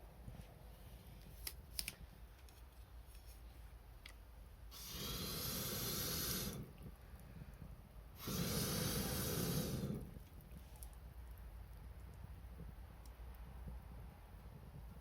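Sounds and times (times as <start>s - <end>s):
breathy air blasts: 4.7s - 6.8s, 7.4s - 10.2s.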